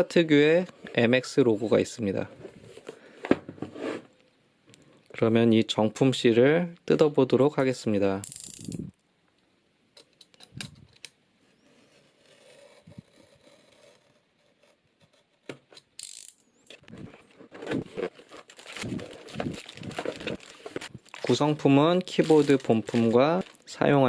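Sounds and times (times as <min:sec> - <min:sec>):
packaging rustling and crinkling: 0:16.8 - 0:24.0.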